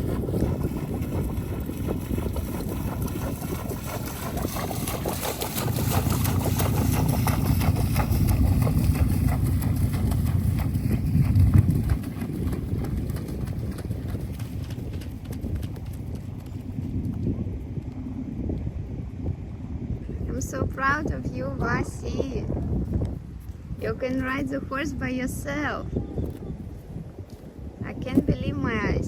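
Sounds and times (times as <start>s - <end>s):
horse hooves clip-clopping: 0.0s - 18.6s
steady low rumble: 0.0s - 29.0s.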